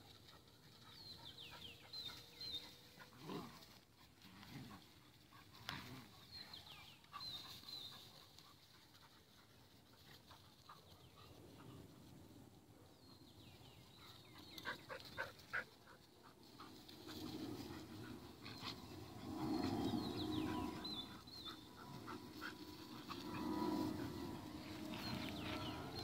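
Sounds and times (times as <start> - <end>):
dog panting: 14.2 - 26.0.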